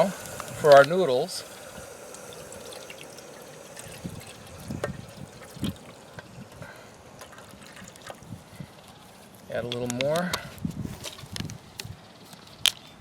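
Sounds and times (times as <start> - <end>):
water pouring and trickling: 0.0 - 8.9.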